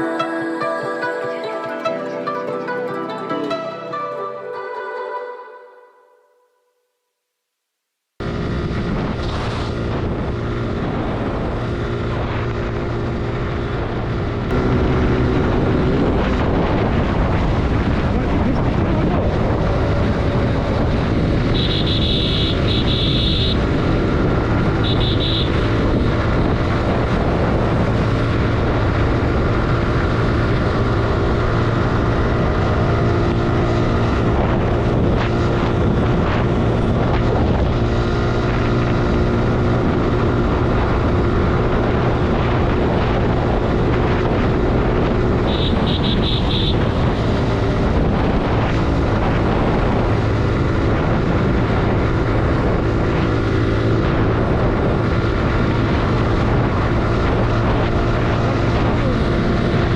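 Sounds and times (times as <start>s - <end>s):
motorcycle engine running: 8.2s - 59.9s
wind on microphone: 8.2s - 59.9s.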